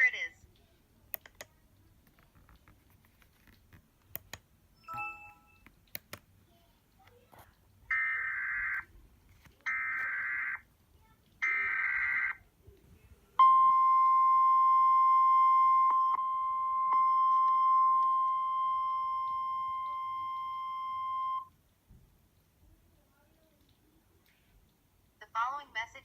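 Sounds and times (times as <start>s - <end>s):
faint clicks: 0.5s - 4.4s
steady single-tone attention signal: 4.8s - 5.7s, 13.4s - 21.5s.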